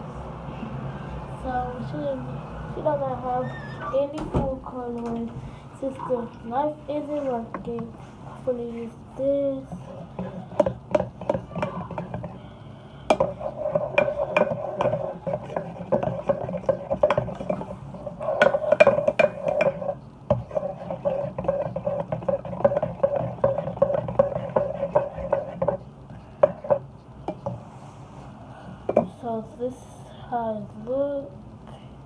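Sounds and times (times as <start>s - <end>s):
utensil scraping slime in bowl: 13.1s - 27.6s.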